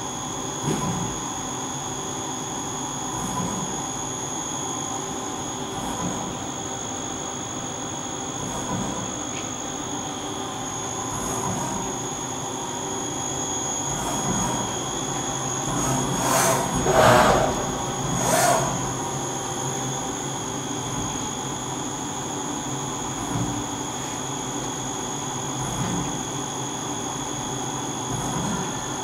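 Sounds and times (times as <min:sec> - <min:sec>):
machining center whine and hum: 0:00.0 - 0:29.0
rushing surges: 0:15.8 - 0:19.0.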